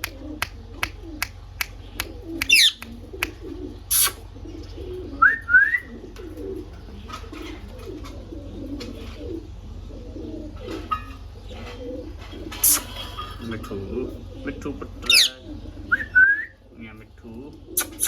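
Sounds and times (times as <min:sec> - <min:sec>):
short rising parrot calls: 0:02.0 - 0:02.9.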